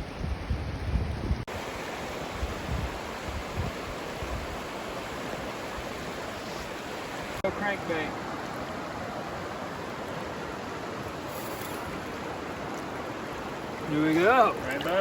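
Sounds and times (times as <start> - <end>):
wind rumble on microphone: 0.0 - 4.8
river water over rapids: 1.5 - 15.0.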